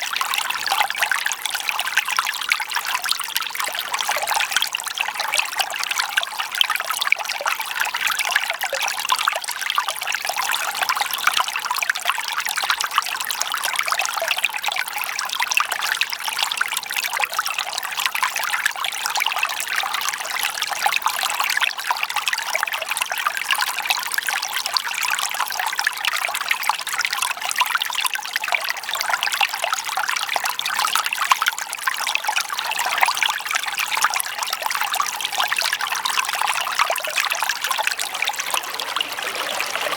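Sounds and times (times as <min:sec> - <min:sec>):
water trickling: 0:33.7 - 0:39.9.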